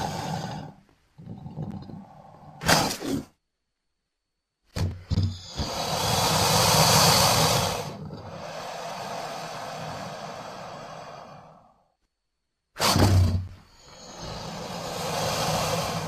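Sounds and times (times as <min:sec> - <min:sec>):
dinosaur breathy call: 0:00.0 - 0:02.9, 0:05.3 - 0:11.9, 0:12.8 - 0:16.0.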